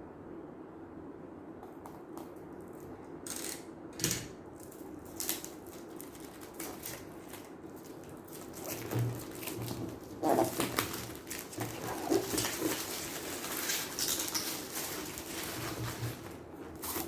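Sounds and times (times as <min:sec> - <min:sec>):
keyboard packaging rustling: 0:04.6 - 0:17.0.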